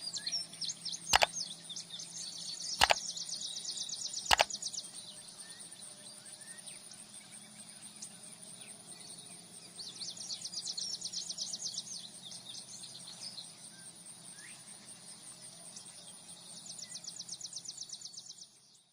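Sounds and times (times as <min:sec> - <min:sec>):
faint bird chirps: 0:02.8 - 0:03.0.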